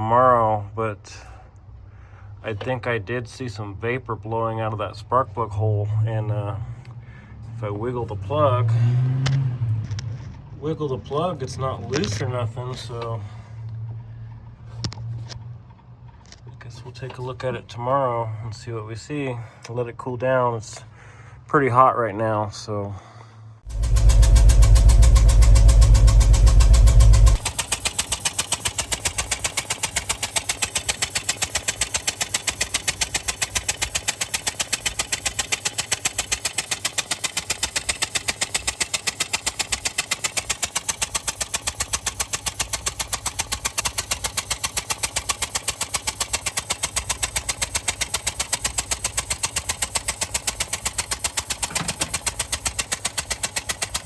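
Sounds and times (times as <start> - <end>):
engine idling with sharp puffing: 1.2 - 2.7, 6.6 - 8.0, 11.2 - 16.4, 23.6 - 54.0
loud low rumble: 23.7 - 27.4.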